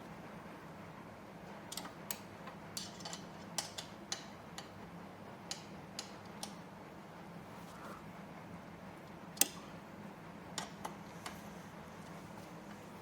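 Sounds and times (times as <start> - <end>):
faint steady hum: 0.0 - 13.0
metal clicks and taps of tools: 1.7 - 4.7, 5.5 - 6.6.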